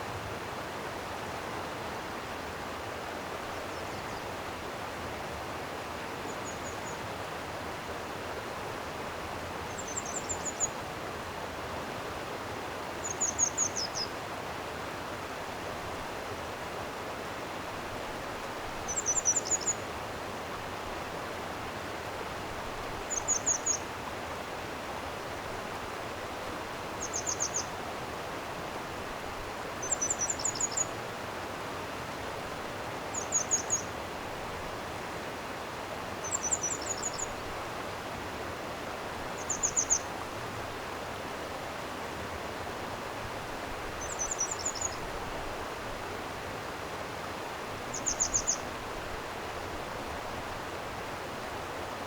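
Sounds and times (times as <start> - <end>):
stream water flowing: 0.0 - 52.0
songbird singing: 6.3 - 7.0, 9.7 - 10.8, 13.0 - 14.2, 18.8 - 19.8, 23.1 - 23.9, 27.0 - 27.8, 29.8 - 31.0, 33.1 - 33.9, 36.2 - 37.4, 39.4 - 40.1, 44.0 - 45.1, 47.9 - 48.7.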